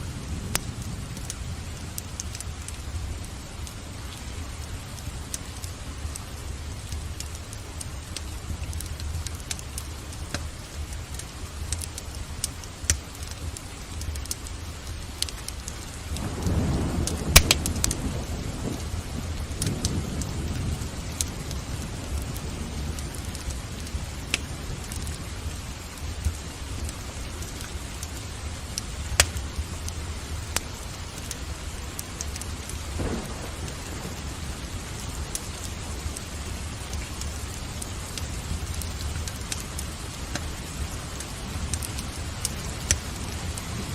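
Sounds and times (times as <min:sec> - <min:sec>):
steady rain: 0:00.0 - 0:43.9
wood fire crackling: 0:00.0 - 0:43.9
thunder rumbling: 0:16.1 - 0:26.5, 0:28.3 - 0:43.9.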